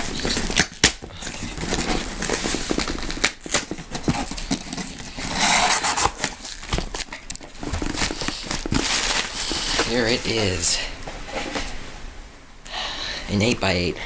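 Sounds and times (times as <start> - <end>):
packaging being handled: 0.0 - 10.7.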